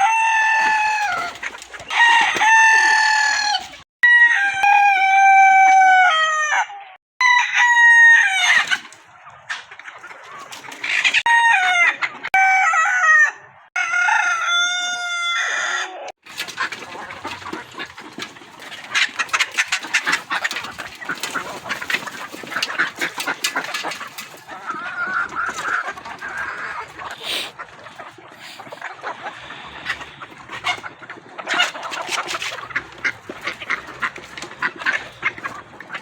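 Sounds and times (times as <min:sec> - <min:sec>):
chickens clucking: 0:00.0 - 0:03.9, 0:08.0 - 0:14.6, 0:15.4 - 0:36.0
rooster crowing: 0:00.0 - 0:08.5, 0:11.3 - 0:16.1.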